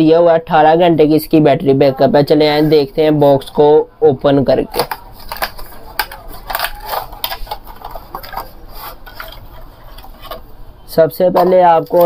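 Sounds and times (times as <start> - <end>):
packaging taps and clicks: 4.7 - 10.4
cardboard scraping and rubbing: 5.1 - 10.5.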